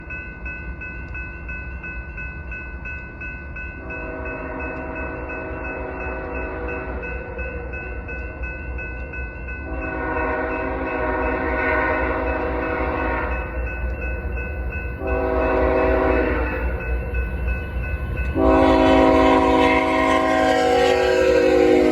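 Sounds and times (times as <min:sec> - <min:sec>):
crossing bell ringing: 0:00.0 - 0:21.9
low rumble of train: 0:00.0 - 0:21.9
locomotive air horn blasts: 0:04.0 - 0:07.0, 0:09.6 - 0:13.4, 0:15.0 - 0:16.5, 0:18.4 - 0:21.9.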